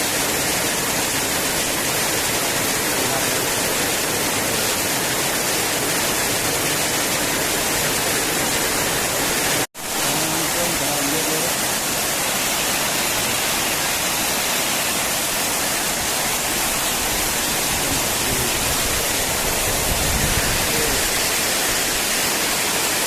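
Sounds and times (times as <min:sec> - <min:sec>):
heavy rain pouring: 0:00.0 - 0:23.0
wind buffeting microphone: 0:17.0 - 0:21.2.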